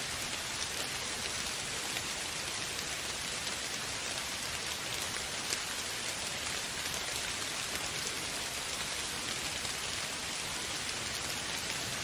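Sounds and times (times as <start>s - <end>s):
raindrop patter: 0.0s - 12.0s
steady rain hiss: 0.0s - 12.0s.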